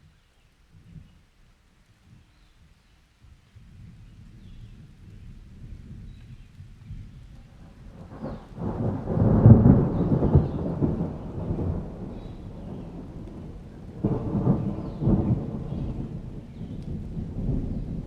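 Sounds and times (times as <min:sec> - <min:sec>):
rain: 0:00.0 - 0:18.0
thunder rumbling: 0:04.4 - 0:18.0.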